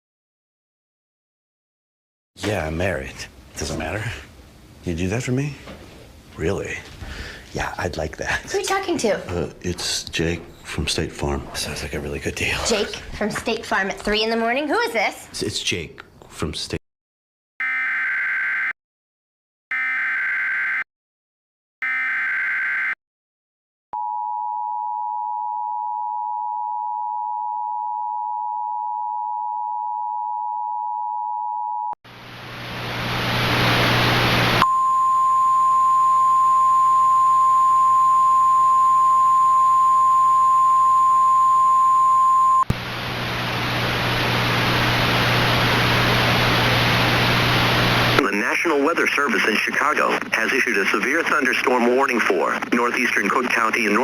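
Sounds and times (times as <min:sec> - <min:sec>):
steady warning alarm tone: 0:17.6 - 0:18.8, 0:19.7 - 0:20.9, 0:21.8 - 0:23.0, 0:34.6 - 0:42.7
two-tone attention signal: 0:21.8 - 0:23.0, 0:34.6 - 0:42.7
radio static hiss with hum: 0:32.1 - 0:34.6, 0:42.8 - 0:54.0.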